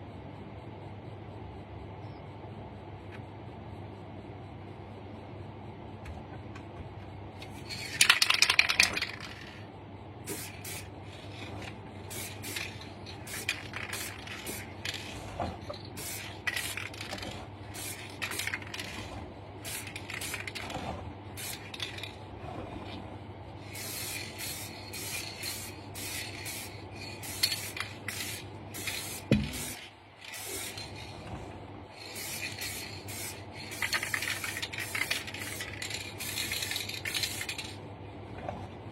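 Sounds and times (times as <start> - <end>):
steady low hum: 0.0 - 38.9
aerosol spray can hissing: 10.3 - 19.0, 19.6 - 20.7, 21.4 - 22.1, 23.6 - 31.2, 32.0 - 37.7.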